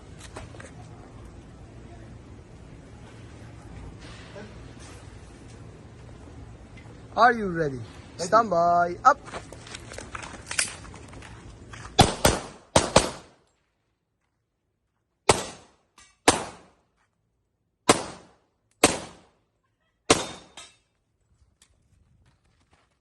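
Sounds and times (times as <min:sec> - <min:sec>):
handgun shots with echo: 0:12.0 - 0:13.3, 0:15.3 - 0:16.7, 0:17.9 - 0:19.3, 0:20.1 - 0:20.7.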